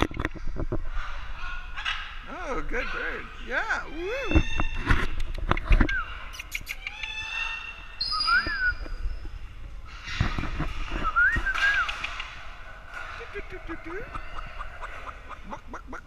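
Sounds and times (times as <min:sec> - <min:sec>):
parrot whistling: 0:08.0 - 0:09.0.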